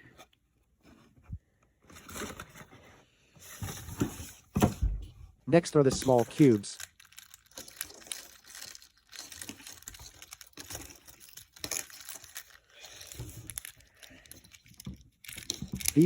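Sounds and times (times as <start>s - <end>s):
packaging crinkling: 5.9s - 16.0s.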